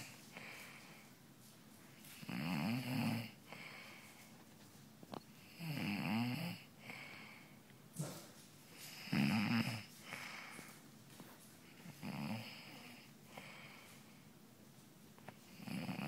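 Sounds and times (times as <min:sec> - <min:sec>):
soft breath: 0:00.0 - 0:01.2, 0:03.5 - 0:04.6, 0:06.8 - 0:07.7, 0:09.9 - 0:14.4
person snoring loudly: 0:02.3 - 0:03.4, 0:05.5 - 0:06.6, 0:09.0 - 0:09.9.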